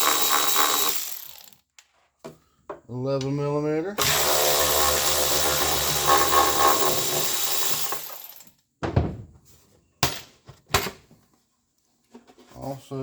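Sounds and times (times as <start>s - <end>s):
power drill spinning: 0.0s - 1.6s, 4.0s - 8.5s.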